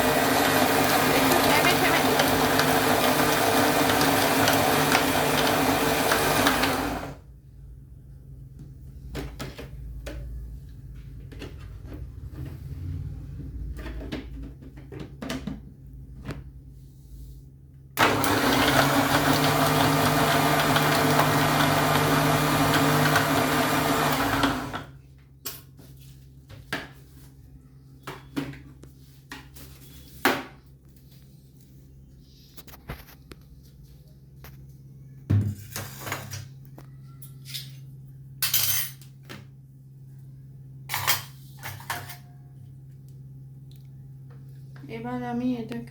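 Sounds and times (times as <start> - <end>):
electric blender motor running: 0.0 - 7.2, 18.0 - 25.0.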